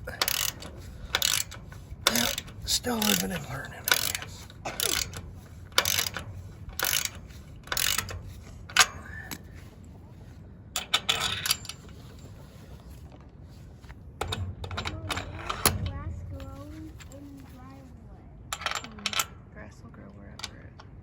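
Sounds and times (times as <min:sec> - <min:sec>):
ratchet wrench clicking: 0:00.1 - 0:09.5.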